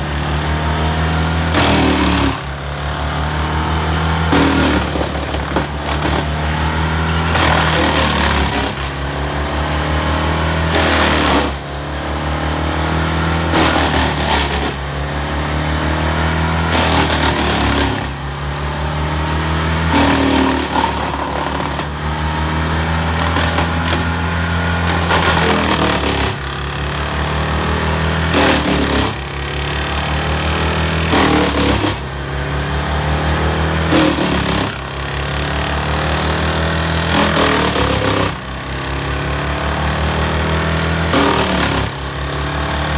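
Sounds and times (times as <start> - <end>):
drum chipper running: 0.0 - 11.9, 19.8 - 32.4, 33.8 - 42.9
wood crunching in chipper: 0.0 - 42.9.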